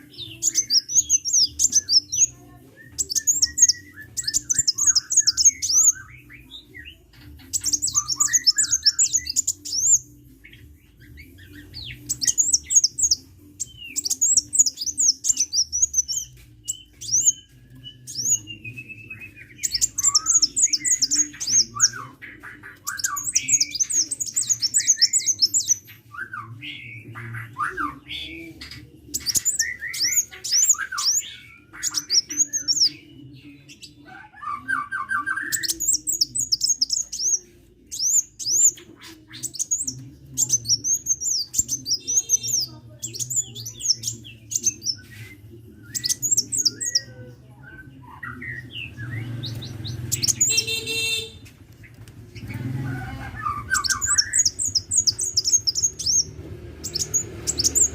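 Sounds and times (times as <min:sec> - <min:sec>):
bird twittering: 0:13.8 - 0:25.9, 0:48.2 - 0:57.9.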